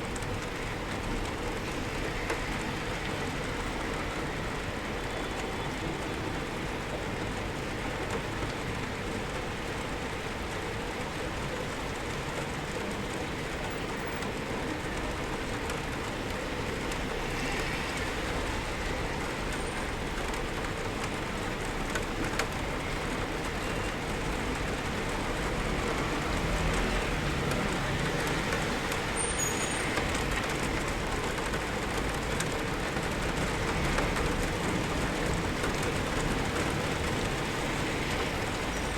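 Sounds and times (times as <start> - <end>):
rain heard from indoors: 0.0 - 38.9.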